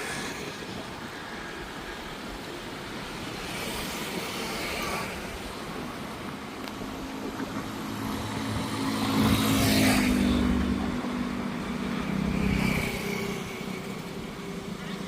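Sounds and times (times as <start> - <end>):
vehicle engine passing by: 7.7 - 13.6.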